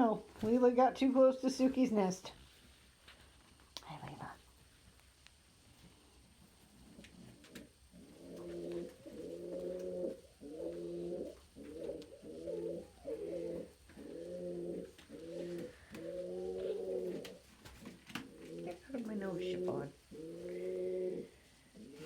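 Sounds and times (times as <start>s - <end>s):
pigeon cooing: 6.9s - 22.0s.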